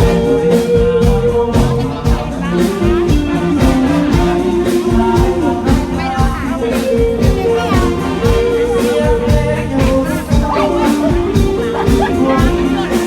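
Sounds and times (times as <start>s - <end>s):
live band music through pa: 0.0s - 13.0s
person singing: 0.0s - 13.0s
steady drum beat: 0.0s - 13.0s.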